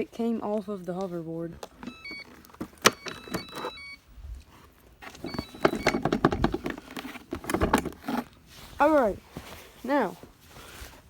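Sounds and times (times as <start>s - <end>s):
rattling clicks and knocks: 1.6s - 3.8s, 5.0s - 8.4s
short high beeps: 1.8s - 2.3s, 2.9s - 4.0s.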